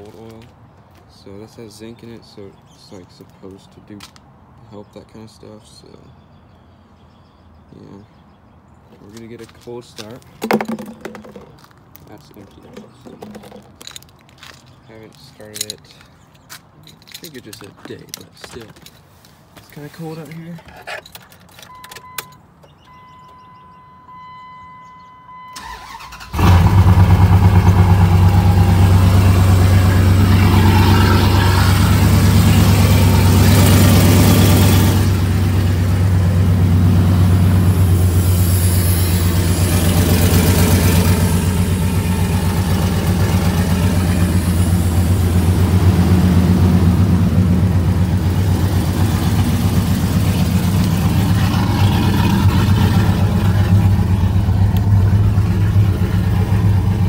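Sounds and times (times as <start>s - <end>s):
car engine starting and idling: 25.4s - 57.0s.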